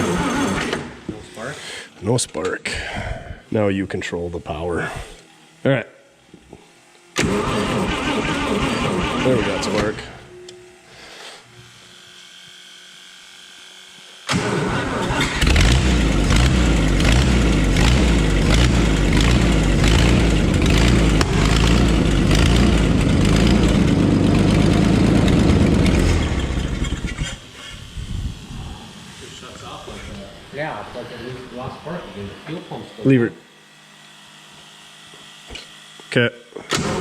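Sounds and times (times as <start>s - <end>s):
tractor engine cranking and sputtering: 0.0s - 1.0s, 7.2s - 10.2s, 14.3s - 27.7s, 36.7s - 37.0s
low hum: 15.4s - 32.3s.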